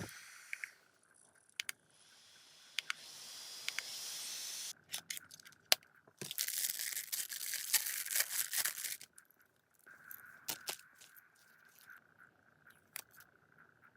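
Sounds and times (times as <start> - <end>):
sharp clicks: 1.5 - 1.8, 2.8 - 4.0
packaging crackling and tearing: 6.2 - 9.1.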